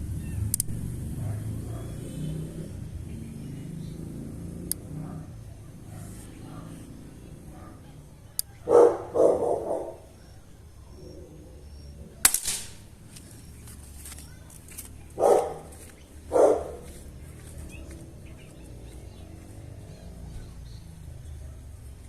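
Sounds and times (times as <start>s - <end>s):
dog barking: 1.1s - 2.7s, 4.9s - 10.2s, 14.3s - 17.2s, 20.0s - 22.0s
rifle shot: 12.2s - 12.9s.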